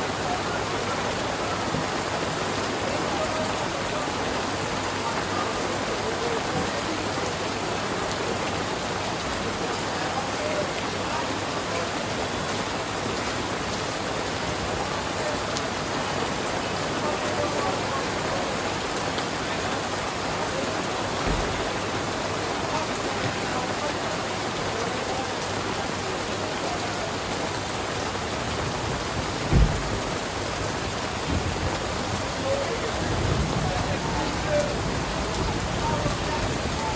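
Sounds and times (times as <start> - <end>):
steady rain hissing: 0.0 - 36.9
low thump: 29.4 - 30.0.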